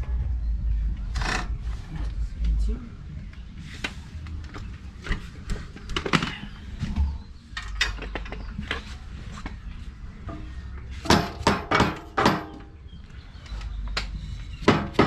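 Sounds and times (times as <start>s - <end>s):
metal clanks and knocks: 7.5s - 9.6s, 10.2s - 12.8s.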